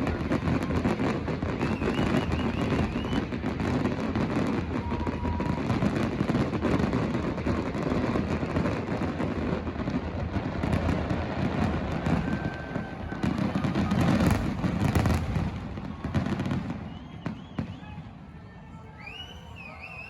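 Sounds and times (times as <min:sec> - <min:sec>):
fireworks crackling bangs: 0:00.0 - 0:18.3.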